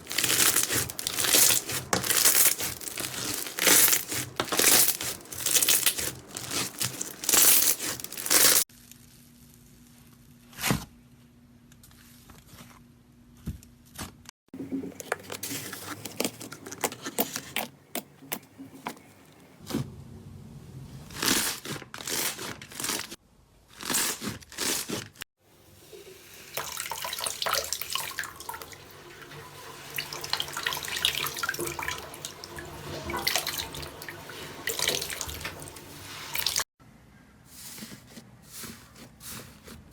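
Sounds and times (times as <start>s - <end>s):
slime squishing and popping: 0.1s - 8.6s.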